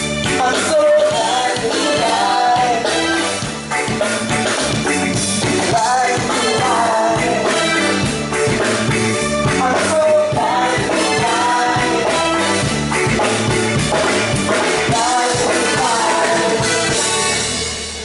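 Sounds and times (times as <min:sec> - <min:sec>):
live band music: 0:00.0 - 0:18.0
person singing: 0:00.3 - 0:03.4, 0:05.6 - 0:08.0, 0:09.5 - 0:12.6, 0:14.8 - 0:17.5.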